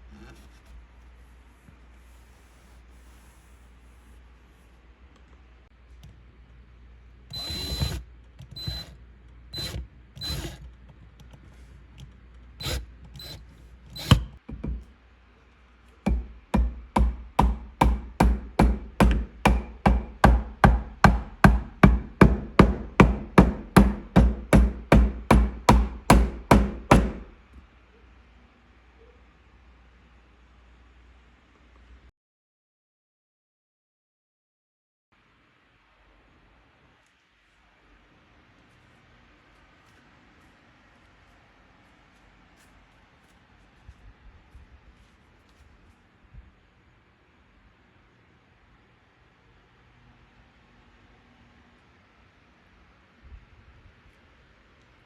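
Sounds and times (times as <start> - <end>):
tool knocking on bench: 14.1 - 14.9, 16.1 - 27.2.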